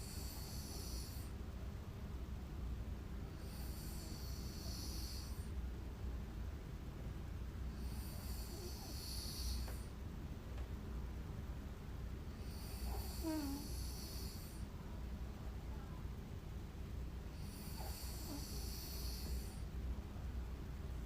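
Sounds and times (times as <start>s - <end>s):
woman snoring: 0.0s - 1.3s, 3.4s - 5.5s, 7.7s - 9.8s, 12.4s - 14.6s, 17.4s - 19.6s
low steady hum: 0.0s - 21.0s.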